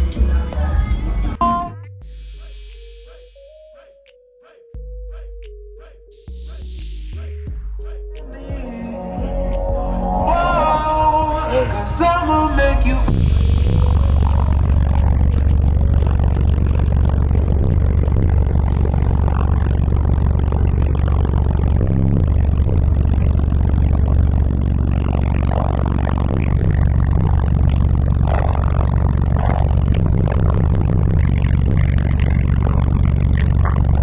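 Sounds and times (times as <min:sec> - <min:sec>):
bass-heavy music from subwoofers: 0:00.0 - 0:04.1, 0:04.8 - 0:34.0.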